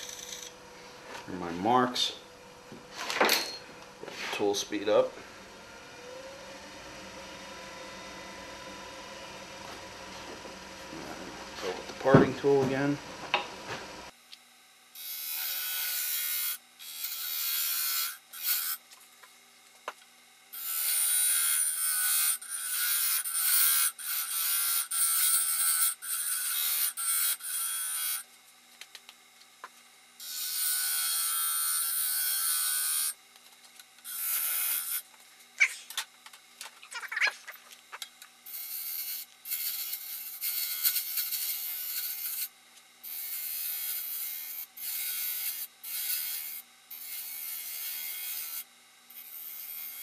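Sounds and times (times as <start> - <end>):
lathe hum: 0.0 - 28.3.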